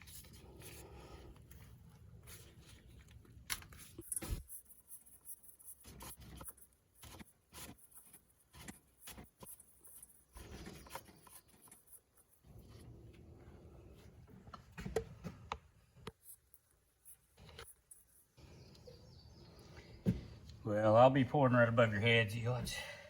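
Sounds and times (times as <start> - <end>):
objects handled with clicks and taps: 1.3 - 12.4, 14.0 - 18.9.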